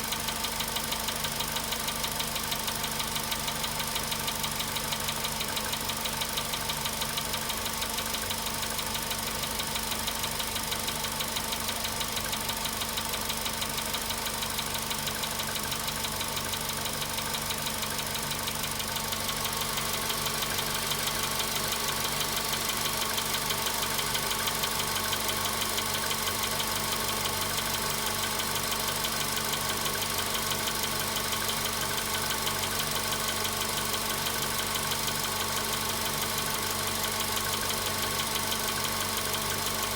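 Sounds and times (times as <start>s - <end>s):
car engine idling: 0.0s - 39.9s
fast regular engine knock: 0.1s - 39.9s.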